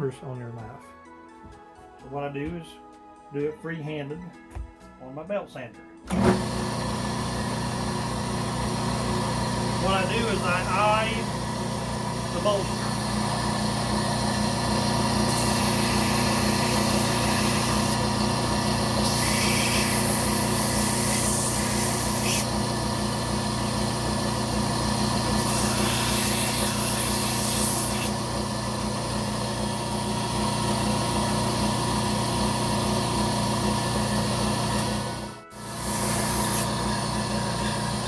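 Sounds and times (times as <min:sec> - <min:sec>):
belt sander running: 0:06.1 - 0:38.0
grinding hiss against sanding belt: 0:19.0 - 0:22.5, 0:25.3 - 0:28.2.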